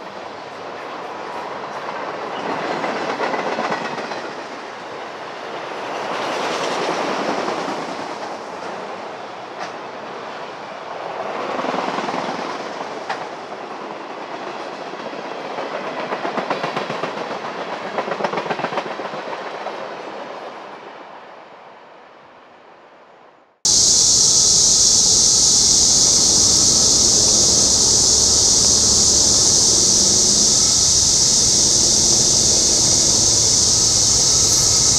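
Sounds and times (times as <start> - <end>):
train wheels clacking on rails: 0.6 - 10.2, 11.1 - 20.0.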